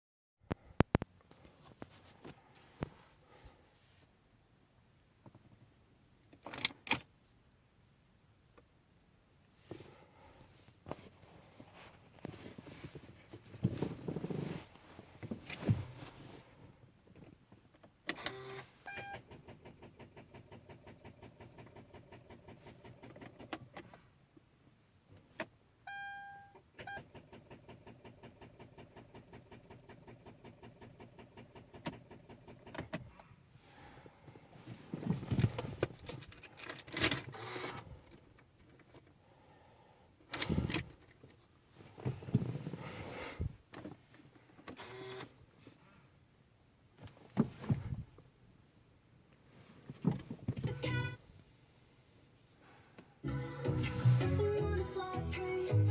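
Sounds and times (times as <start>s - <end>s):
handling knocks and rustles: 10.7s - 16.5s.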